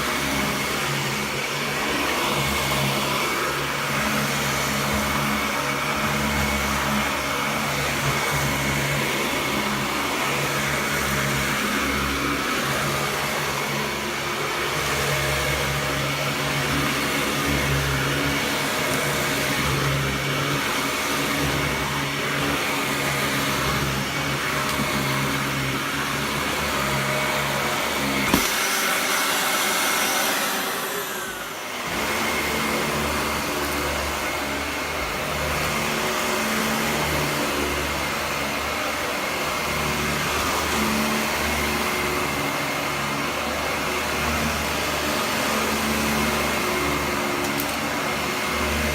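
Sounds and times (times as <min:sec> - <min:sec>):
vacuum cleaner running: 0:00.0 - 0:48.9
vacuum cleaner click: 0:24.0 - 0:25.3, 0:26.7 - 0:34.6, 0:46.2 - 0:48.1.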